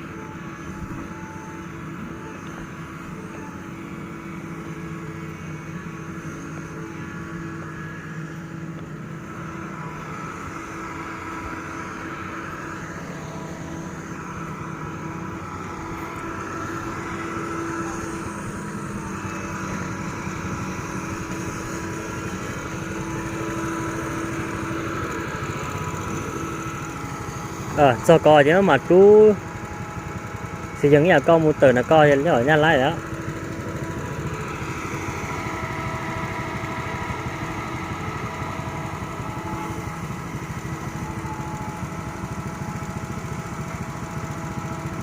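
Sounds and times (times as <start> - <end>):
heavy diesel engine running: 0.0 - 45.0.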